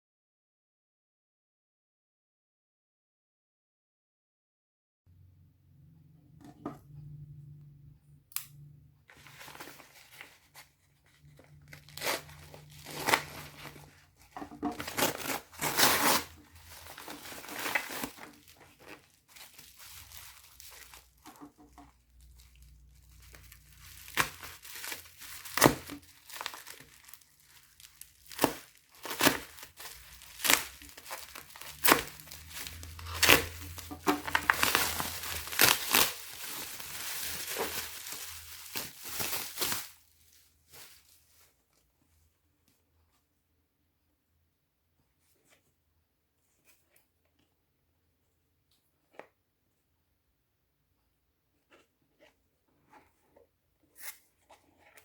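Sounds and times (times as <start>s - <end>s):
packaging crinkling and tearing: 9.1s - 41.5s.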